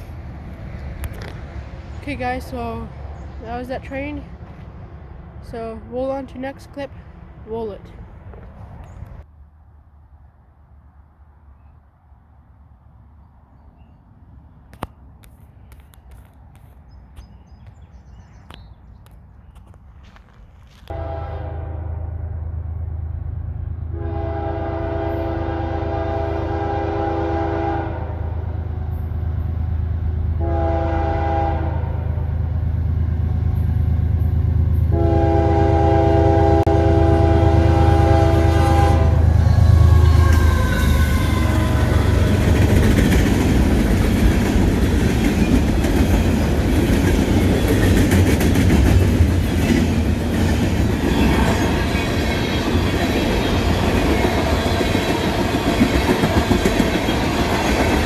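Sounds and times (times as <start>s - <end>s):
diesel locomotive engine: 0.0s - 58.0s
train horn: 20.9s - 22.8s, 23.9s - 29.5s, 30.3s - 32.4s, 33.6s - 42.9s
train cars clickety-clack: 33.5s - 58.0s.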